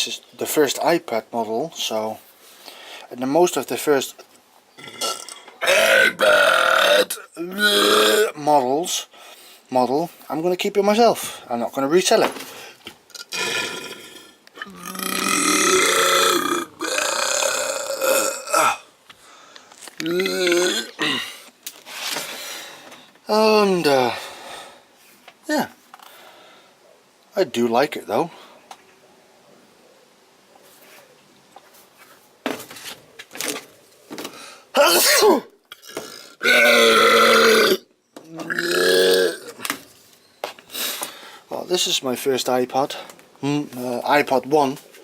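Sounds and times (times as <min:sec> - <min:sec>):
man burping: 0:04.8 - 0:08.4, 0:13.1 - 0:18.9, 0:20.0 - 0:21.4, 0:34.8 - 0:39.7
person belching loudly: 0:04.8 - 0:08.4, 0:13.1 - 0:18.9, 0:20.0 - 0:21.4, 0:34.8 - 0:39.6.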